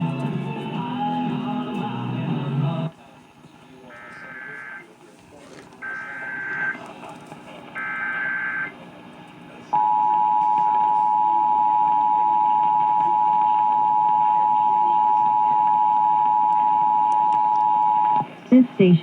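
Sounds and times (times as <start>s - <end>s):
two-tone alert signal: 5.8s - 6.8s.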